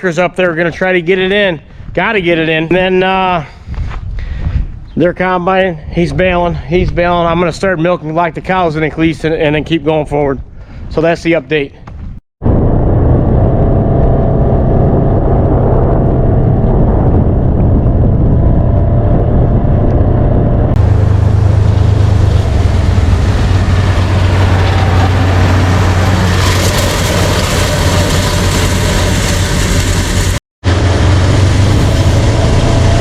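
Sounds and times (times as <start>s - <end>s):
diesel engine drone: 12.4s - 33.0s.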